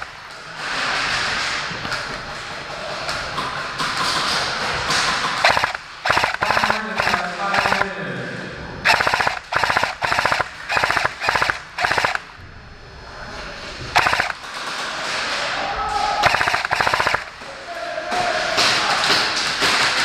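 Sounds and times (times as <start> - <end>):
airsoft machine gun full-auto bursts: 0.0 - 0.2, 5.4 - 7.9, 8.9 - 12.3, 14.0 - 14.5, 16.2 - 17.4.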